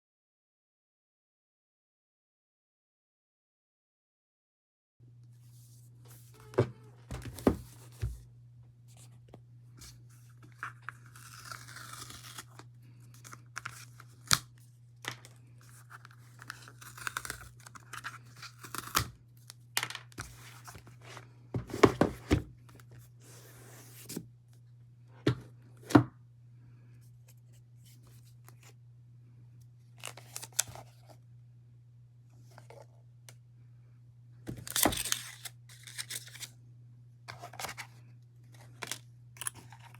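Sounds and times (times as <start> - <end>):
paper tearing and rustling: 10.5 - 12.6, 15.1 - 19.1, 34.5 - 36.5.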